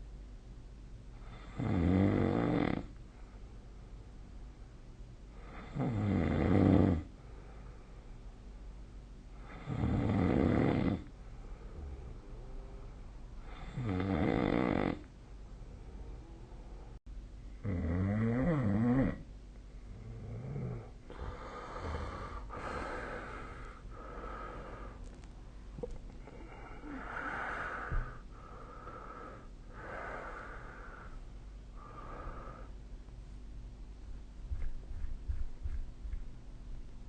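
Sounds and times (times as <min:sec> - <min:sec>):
person snoring: 0:01.2 - 0:02.9, 0:09.4 - 0:11.1, 0:13.4 - 0:15.1, 0:26.2 - 0:31.2
wheezy breathing: 0:21.1 - 0:25.1, 0:26.2 - 0:32.8.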